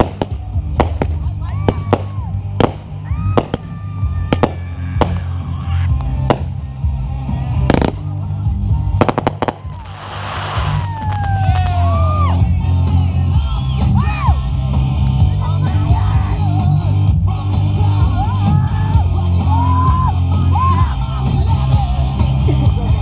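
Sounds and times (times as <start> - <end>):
loud rock music: 0.0 - 23.0.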